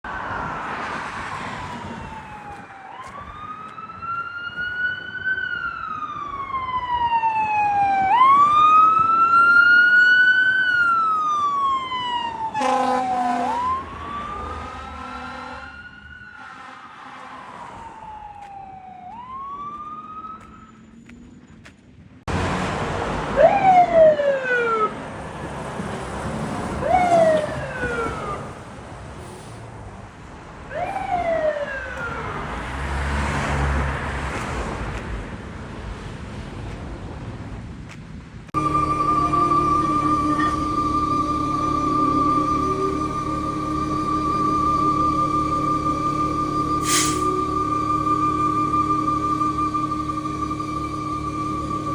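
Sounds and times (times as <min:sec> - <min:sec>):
fire engine siren wailing: 0:00.1 - 0:20.8, 0:23.2 - 0:29.0, 0:30.6 - 0:34.2, 0:38.6 - 0:51.9
horn blast: 0:12.6 - 0:17.6, 0:38.6 - 0:51.9.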